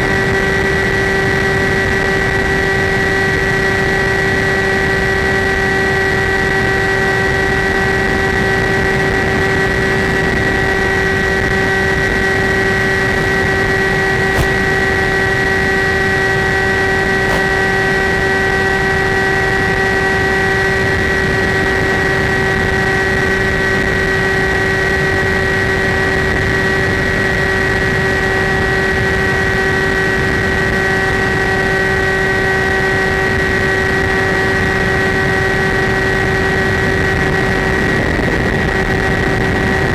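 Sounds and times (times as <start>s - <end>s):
model plane motor whine: 0.0s - 39.9s.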